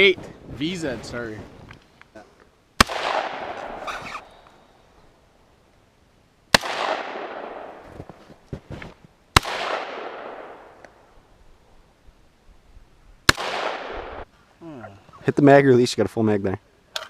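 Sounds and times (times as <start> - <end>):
rifle shots with echo: 2.8 - 3.9, 6.5 - 7.9, 9.4 - 10.8, 13.3 - 14.2.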